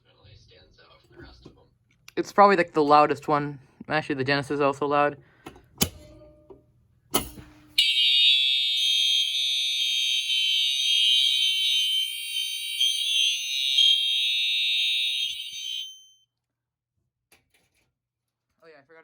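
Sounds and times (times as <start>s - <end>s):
fire alarm horns: 7.6s - 16.2s.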